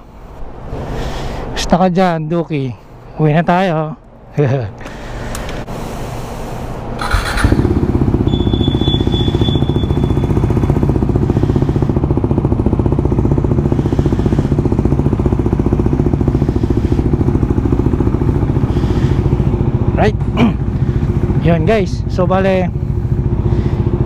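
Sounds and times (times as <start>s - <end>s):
motorcycle engine cranking: 7.0s - 10.6s
motorcycle engine idling: 7.0s - 24.0s.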